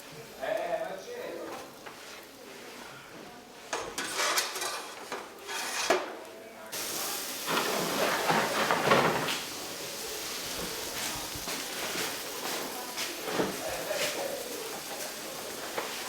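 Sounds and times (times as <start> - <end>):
metal trays and utensils clattering: 3.7 - 6.2, 6.8 - 16.0.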